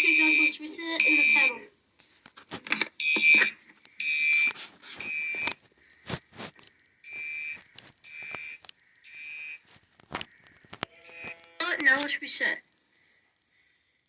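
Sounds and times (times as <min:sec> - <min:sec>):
fire alarm horn beeps: 0:00.0 - 0:01.6, 0:03.0 - 0:05.5, 0:07.1 - 0:09.6.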